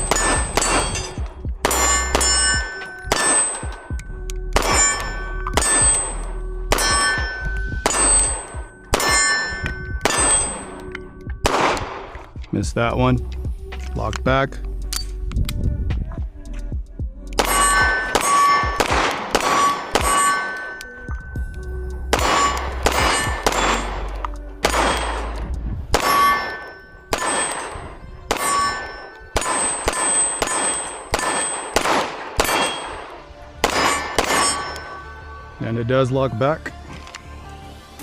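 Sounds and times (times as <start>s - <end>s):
pistol shots ringing: 0.0s - 12.4s, 17.4s - 21.4s, 22.1s - 35.2s.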